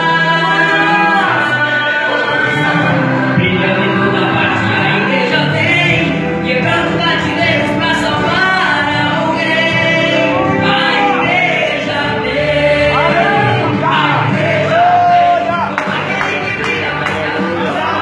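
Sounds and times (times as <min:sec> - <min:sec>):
gospel choir singing: 0:00.0 - 0:18.0.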